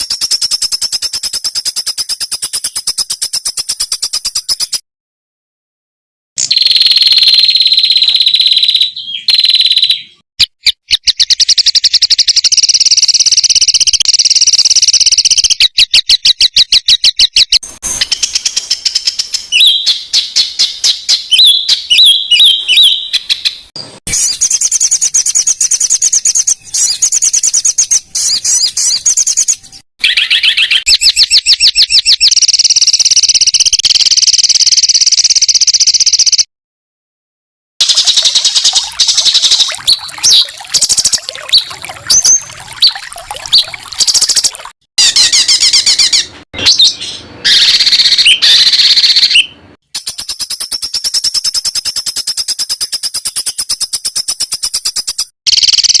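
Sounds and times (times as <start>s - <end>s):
songbirds singing trills: 0.0s - 4.8s, 6.4s - 36.5s, 37.9s - 56.0s.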